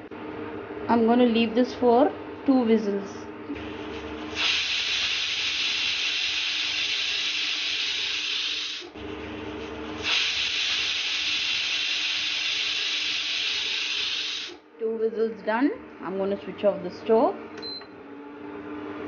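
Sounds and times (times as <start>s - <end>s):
pressure cooker whistling: 4.3s - 8.9s, 10.0s - 14.6s.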